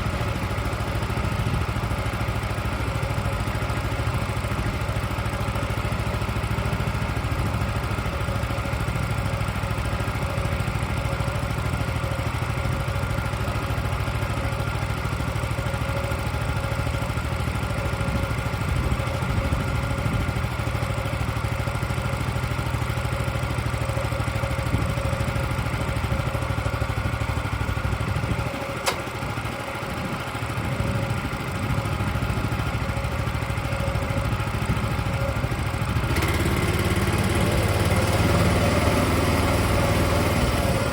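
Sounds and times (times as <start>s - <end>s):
sawmill engine running: 0.0s - 40.9s
sharp click: 28.8s - 29.2s.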